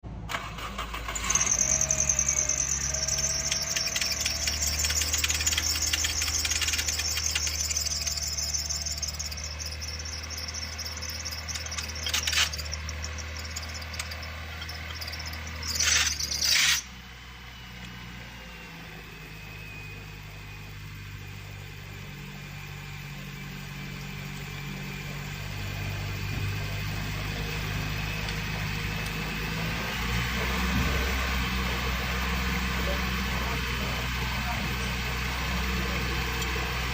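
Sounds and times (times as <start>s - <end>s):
car engine idling: 0.0s - 36.9s
belt squealing: 0.4s - 16.9s.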